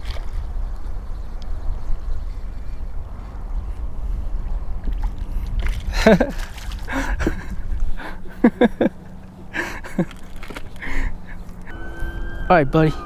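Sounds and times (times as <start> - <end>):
wind rumbling on microphone: 0.0 - 8.8.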